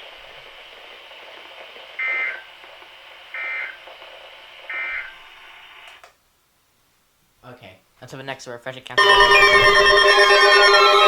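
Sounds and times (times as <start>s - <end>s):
radio hiss: 0.0s - 6.0s.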